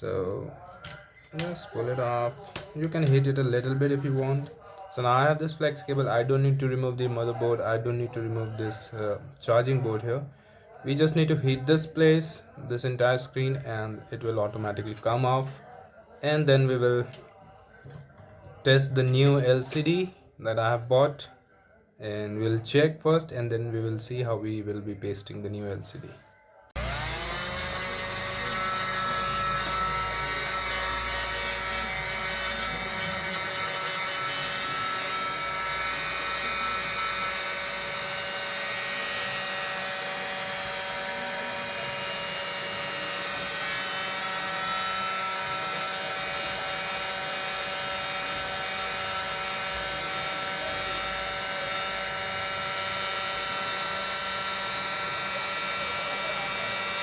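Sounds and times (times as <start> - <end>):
hot air gun motor whine: 26.8 - 57.0.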